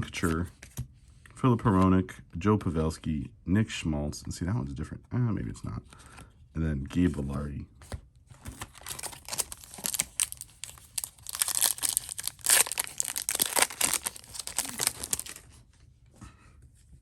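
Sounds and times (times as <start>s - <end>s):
foil wrapper tearing and crinkling: 8.5s - 15.5s.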